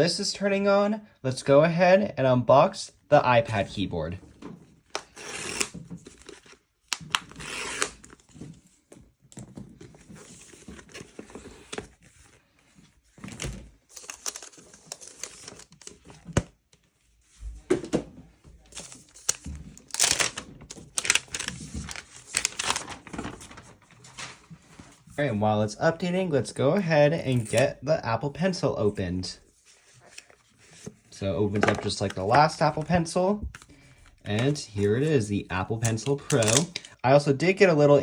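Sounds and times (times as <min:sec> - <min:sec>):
paper tearing and crinkling: 0:05.0 - 0:08.4, 0:13.3 - 0:16.2, 0:18.8 - 0:24.9, 0:35.8 - 0:36.8.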